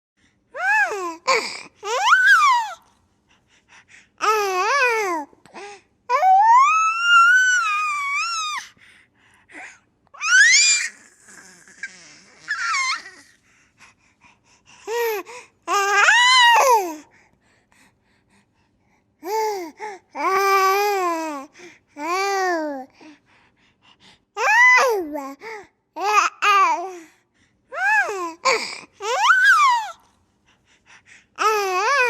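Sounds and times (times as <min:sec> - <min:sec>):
baby squealing: 0:01.9 - 0:02.8, 0:10.2 - 0:13.3, 0:29.0 - 0:30.0.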